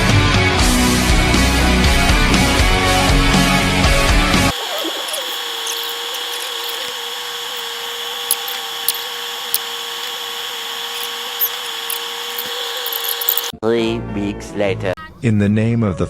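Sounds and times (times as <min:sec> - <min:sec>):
small motor whining: 0:04.3 - 0:13.5.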